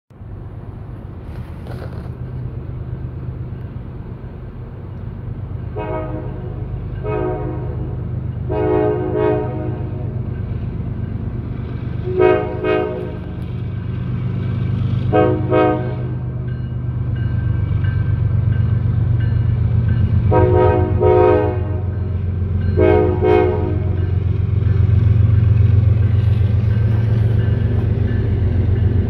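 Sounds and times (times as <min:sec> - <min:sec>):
diesel locomotive rumble: 0:00.1 - 0:29.0
locomotive air horn blasts: 0:05.8 - 0:10.2, 0:12.0 - 0:13.3, 0:15.1 - 0:16.4, 0:20.3 - 0:22.0, 0:22.8 - 0:24.0.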